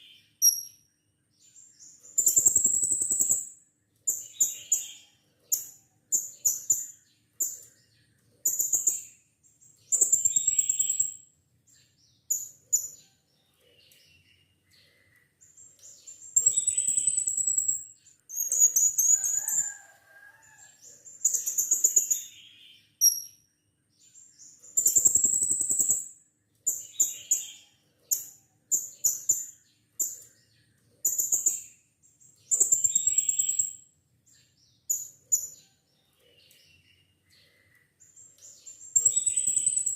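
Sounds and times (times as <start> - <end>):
parrot chirping and trilling: 16.0 - 23.5.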